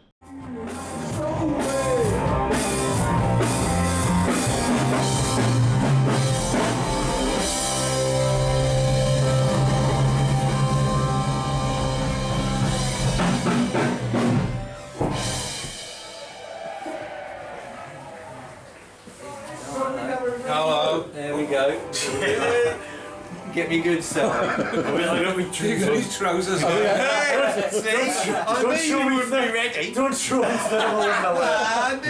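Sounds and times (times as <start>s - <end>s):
person singing: 0.2s - 3.2s
drum kit: 0.2s - 17.6s
electric guitars: 0.3s - 16.1s, 21.7s - 27.0s.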